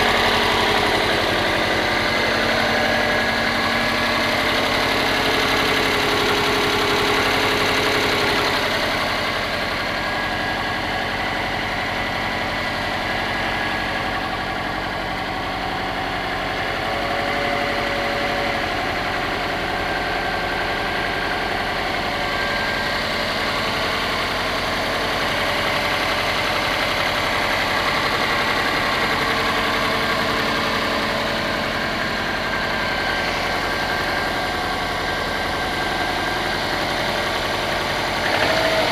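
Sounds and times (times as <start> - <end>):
car engine idling: 0.0 - 38.9
rapid engine knock: 0.0 - 38.9.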